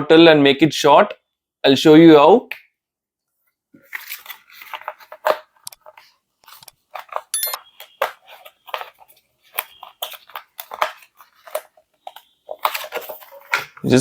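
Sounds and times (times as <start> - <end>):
plastic bottle crinkling: 3.8 - 13.9
high squeak: 7.4 - 7.7.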